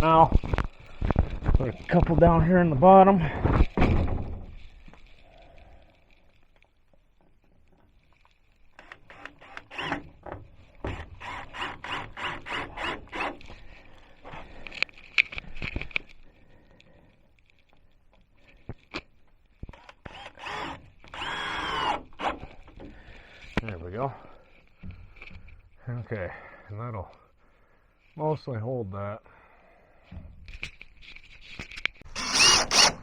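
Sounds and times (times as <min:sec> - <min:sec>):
cordless drill driving screws: 0:08.8 - 0:13.4, 0:19.7 - 0:22.6, 0:32.0 - 0:33.0.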